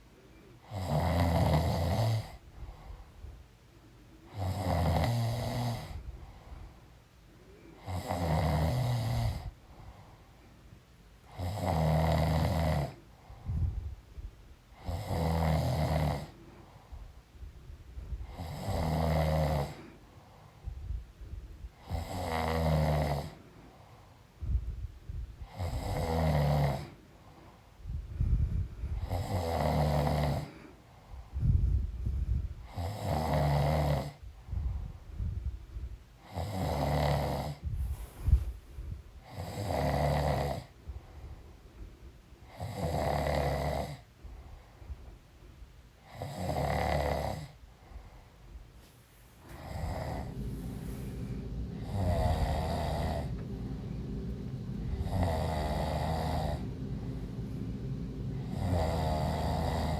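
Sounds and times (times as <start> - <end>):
woman snoring: 0.7 - 2.3, 18.3 - 19.8, 21.8 - 23.4, 29.0 - 30.5, 49.5 - 59.9
quiet breathing: 2.1 - 8.2, 8.8 - 11.5, 12.8 - 15.1, 15.9 - 32.9, 34.1 - 36.3, 37.5 - 39.4, 40.2 - 42.6, 44.0 - 45.7, 47.5 - 59.9.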